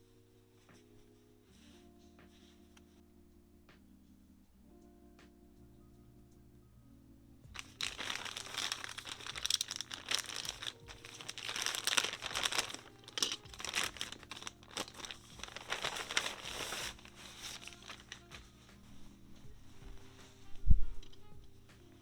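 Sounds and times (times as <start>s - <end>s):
plastic packaging crinkling: 7.6s - 21.3s.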